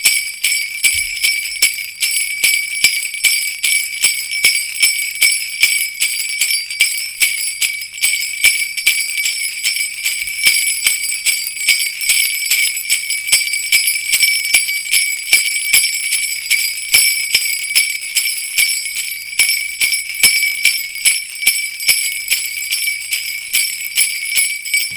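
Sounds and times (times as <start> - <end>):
sleigh bells jingling: 0.0 - 24.9.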